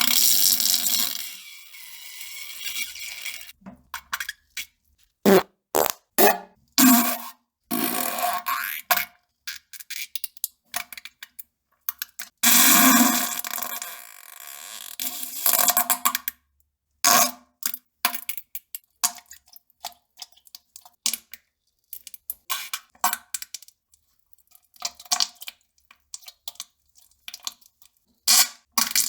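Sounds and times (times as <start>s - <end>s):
fart pops and sputters: 5.3s - 6.5s.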